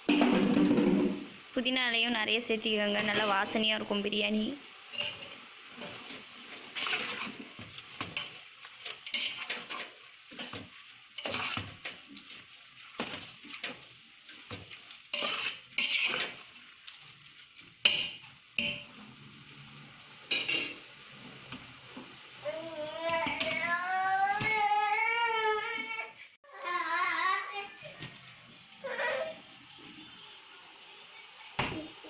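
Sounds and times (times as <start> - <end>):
food sizzling: 0.0 - 32.0
metal utensil scraping pot: 4.9 - 16.6.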